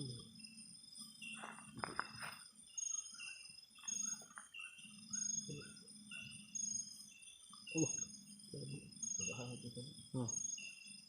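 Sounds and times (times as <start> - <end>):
crickets trilling: 0.0 - 11.0
rustles and clicks of movement: 1.3 - 2.5.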